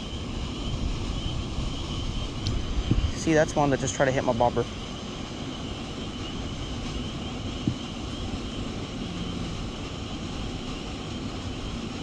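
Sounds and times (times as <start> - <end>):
faint high hum: 0.0 - 12.0
low rumble: 6.6 - 12.0.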